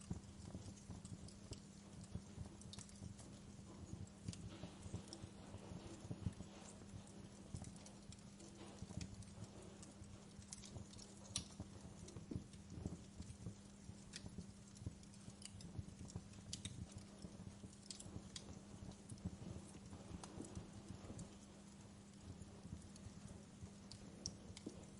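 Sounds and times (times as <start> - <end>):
fire popping and snapping: 0.0 - 24.9
steady low hum: 0.0 - 24.9
wood fire crackling: 0.0 - 24.9.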